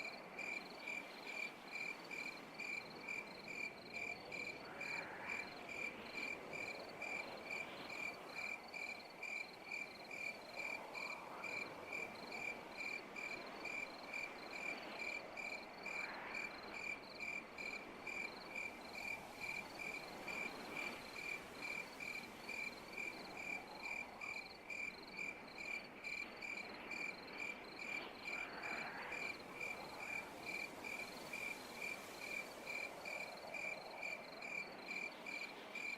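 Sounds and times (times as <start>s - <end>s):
cricket chirping: 0.0s - 35.9s
soft hiss: 29.2s - 35.9s.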